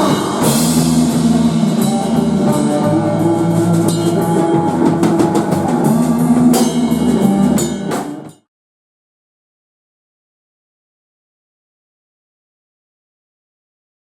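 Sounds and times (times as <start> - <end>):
rock band playing: 0.0 - 8.4.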